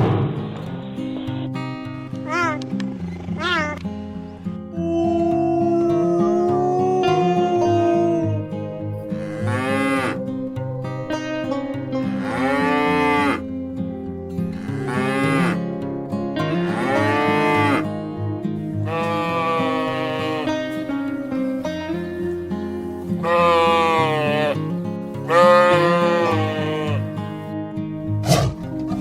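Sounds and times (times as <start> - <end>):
plucked string music: 0.0 - 29.0
cattle mooing: 4.8 - 10.4, 11.0 - 13.6, 14.5 - 27.5.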